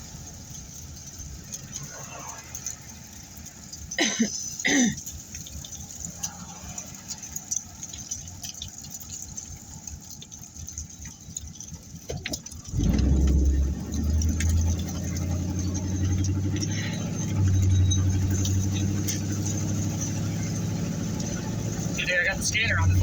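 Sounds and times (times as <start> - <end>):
small rattles and ticks: 0.0 - 23.0
car cabin rumble: 11.6 - 23.0
short falling squeals: 14.4 - 19.7.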